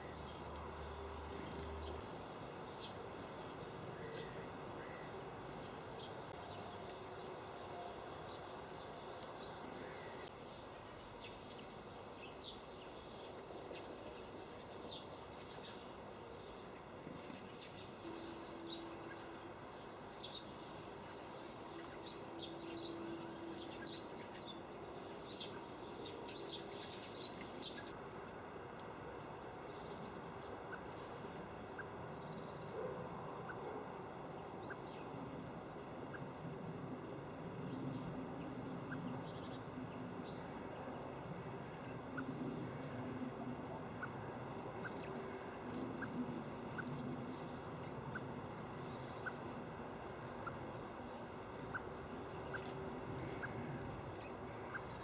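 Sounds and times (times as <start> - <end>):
low steady background hum: 0.0 - 55.0
small birds chirping: 43.8 - 55.0.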